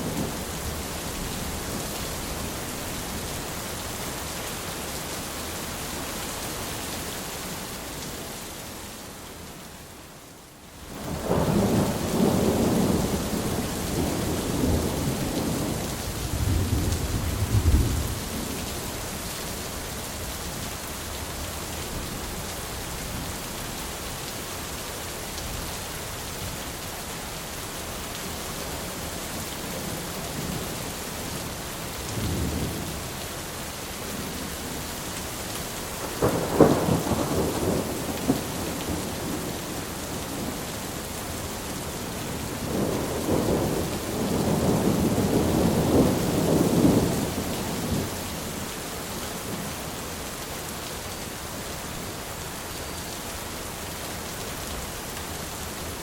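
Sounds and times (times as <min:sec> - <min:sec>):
steady rain falling: 0:00.0 - 0:56.0
rolling thunder: 0:11.1 - 0:18.3, 0:36.2 - 0:39.6, 0:42.6 - 0:48.1.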